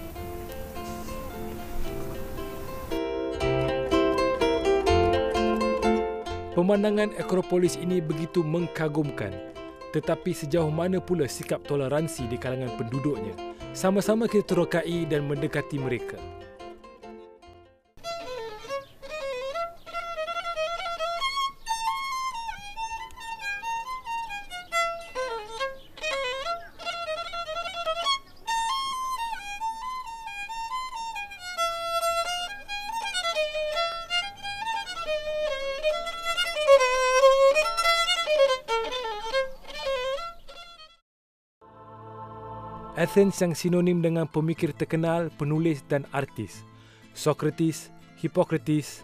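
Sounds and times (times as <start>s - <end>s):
solo violin melody: 0.0s - 15.1s, 18.0s - 41.0s.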